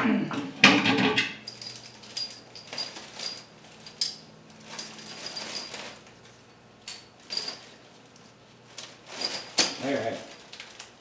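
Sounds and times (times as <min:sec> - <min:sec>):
metallic clinks and jingling: 0:01.5 - 0:07.8.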